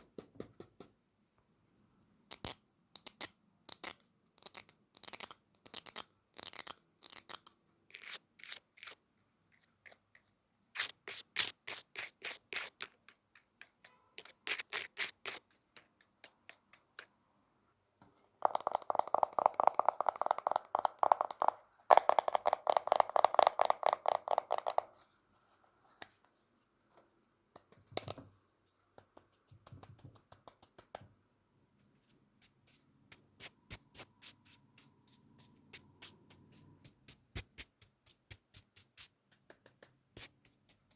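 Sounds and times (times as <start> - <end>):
makeup taps and scratches: 18.4 - 25.0, 29.0 - 31.1.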